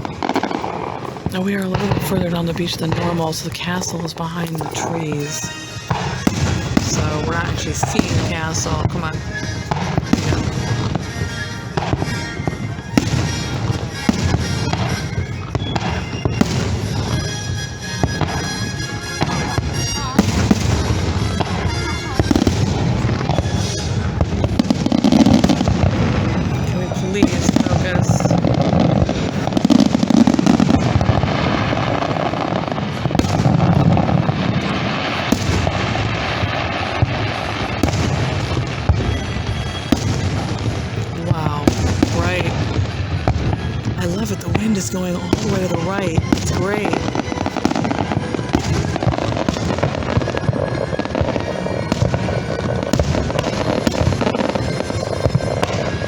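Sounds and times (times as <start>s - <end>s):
fireworks bursting: 0.0s - 56.0s
music playing: 0.0s - 56.0s.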